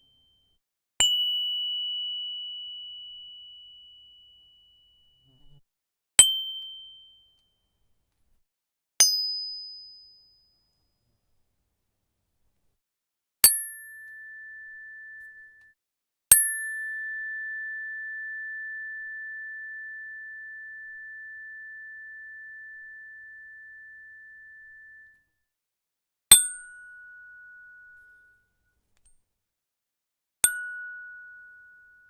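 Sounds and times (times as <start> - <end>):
tuning fork ringing tone: 0.0 - 5.3, 6.3 - 7.8, 13.5 - 25.3, 26.5 - 28.7, 30.4 - 32.0.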